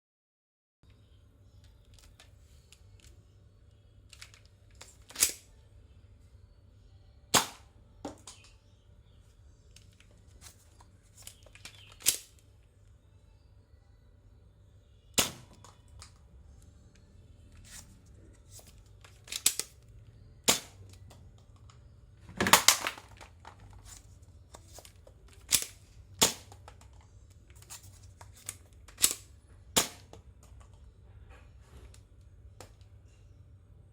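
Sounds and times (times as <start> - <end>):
foam dart blaster pops: 7.3 - 8.2, 15.2 - 15.8, 20.5 - 21.0, 22.4 - 23.3, 25.5 - 26.8, 29.8 - 30.2.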